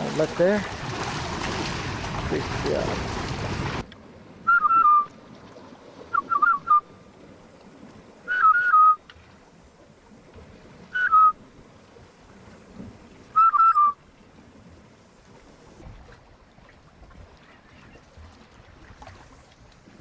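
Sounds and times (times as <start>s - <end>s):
bird whistled call: 4.5s - 5.1s, 6.1s - 6.9s, 8.3s - 9.0s, 10.9s - 11.4s, 13.3s - 14.0s.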